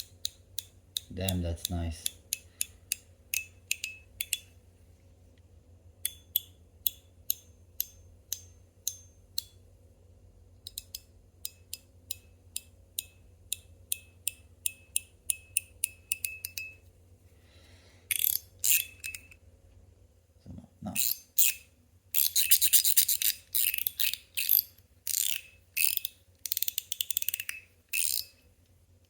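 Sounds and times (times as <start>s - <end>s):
metal fidget slider clicking: 0.0s - 4.5s, 18.1s - 19.4s, 22.2s - 28.4s.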